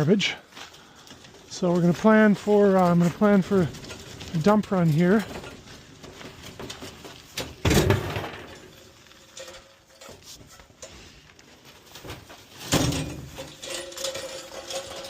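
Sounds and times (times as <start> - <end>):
loud thuds of dropped junk: 5.2 - 10.2, 11.9 - 14.8.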